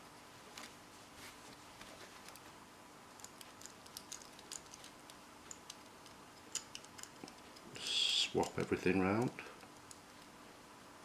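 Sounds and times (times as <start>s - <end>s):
padlock parts clicking: 3.1s - 7.7s.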